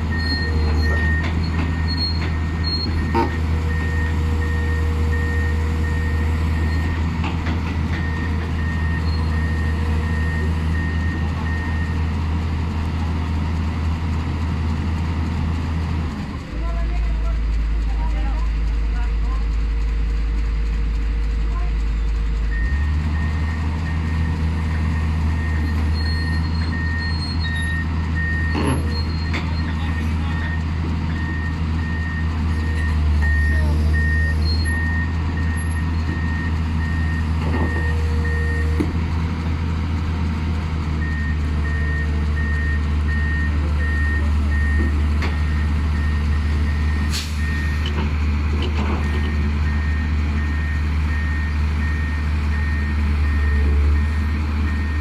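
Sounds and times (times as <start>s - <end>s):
backhoe engine running: 0.0s - 55.0s
reversing alarm beeping: 22.5s - 38.8s, 41.0s - 47.8s, 49.0s - 55.0s.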